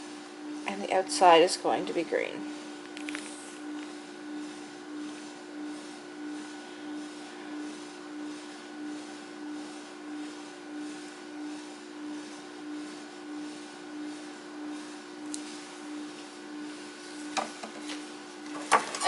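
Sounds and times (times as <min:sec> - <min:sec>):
pulsing machine hum: 0:00.0 - 0:19.0.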